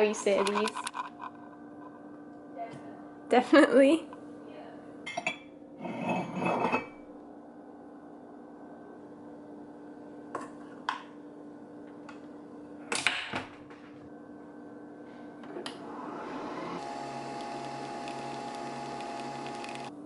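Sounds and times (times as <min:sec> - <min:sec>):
coffee machine humming: 0:15.4 - 0:20.0
coffee machine brewing: 0:15.5 - 0:20.0.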